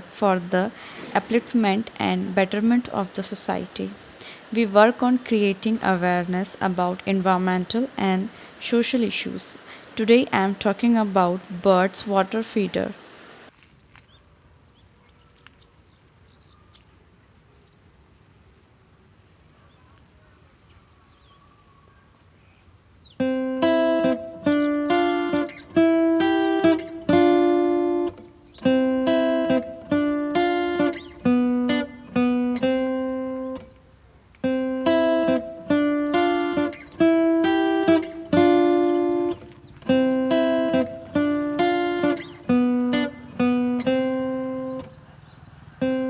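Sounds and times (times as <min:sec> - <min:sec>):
plucked-string melody: 0:23.2 - 0:33.8, 0:34.4 - 0:45.0.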